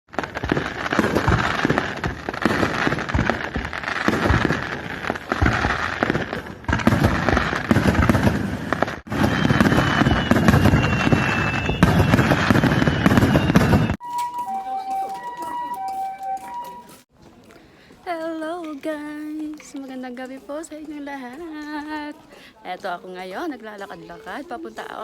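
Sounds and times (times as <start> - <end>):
fireworks bangs: 0.1 - 17.1
fireworks crackle: 0.1 - 17.1.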